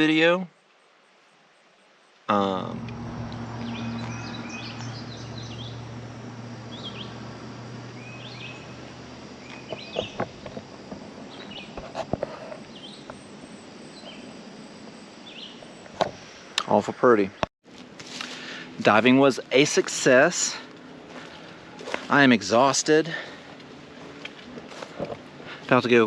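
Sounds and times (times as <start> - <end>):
small birds chirping: 2.3 - 10.6, 11.2 - 11.8, 12.5 - 14.4, 15.2 - 16.7
steady low hum: 2.3 - 26.0.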